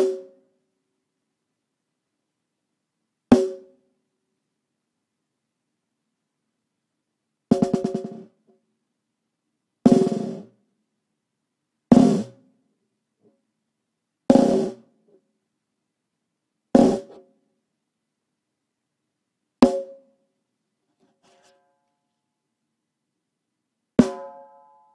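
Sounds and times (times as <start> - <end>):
snare drum hits: 16.8 - 17.2, 24.0 - 24.4.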